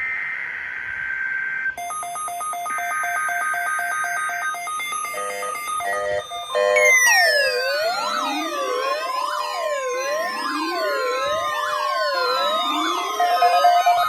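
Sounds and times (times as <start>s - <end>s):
stepped electronic tones: 4.9s - 14.0s
screechy digital data bursts: 5.0s - 14.0s
warbling electronic beeps: 5.0s - 14.0s.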